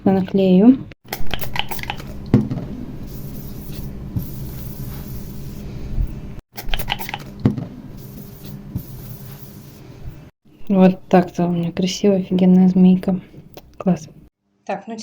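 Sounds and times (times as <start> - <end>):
steady low hum: 1.1 - 14.3
sticker rubbing on tablet: 1.3 - 11.7.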